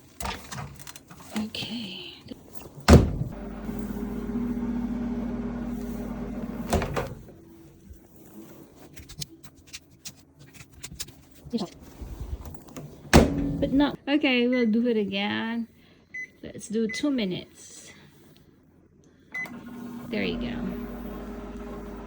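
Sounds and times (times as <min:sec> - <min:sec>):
microwave oven humming: 0:02.9 - 0:07.5, 0:19.4 - 0:22.0
microwave door thunk: 0:13.2 - 0:13.7.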